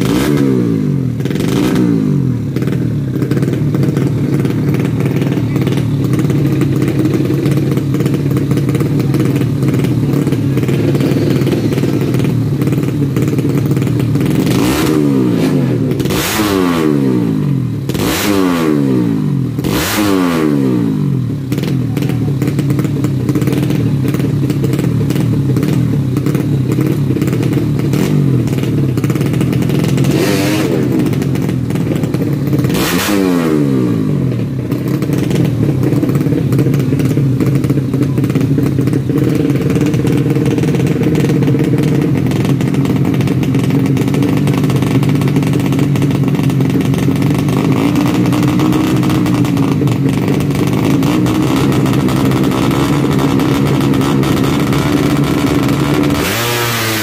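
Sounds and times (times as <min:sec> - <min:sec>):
motorcycle engines droning: 0:00.0 - 0:57.0
loud engine bursts: 0:50.5 - 0:57.0.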